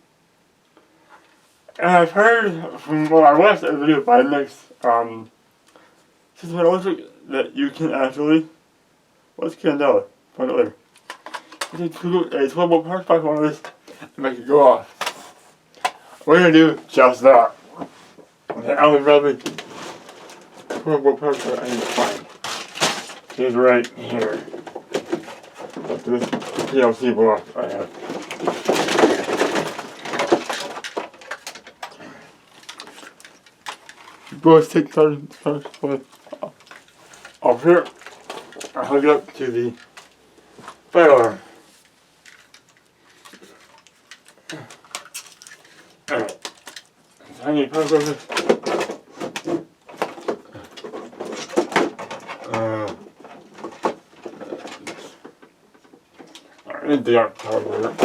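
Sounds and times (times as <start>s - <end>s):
hard objects clattering: 11.0s - 11.8s, 13.5s - 41.4s, 42.2s - 58.0s
rummaging through parts: 11.0s - 12.2s, 13.4s - 58.0s.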